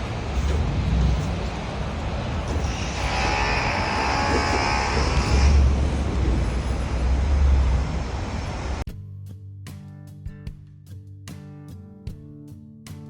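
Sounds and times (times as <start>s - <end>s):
vehicle rumble with hiss: 0.0s - 8.8s
buzzing whine: 2.4s - 8.8s.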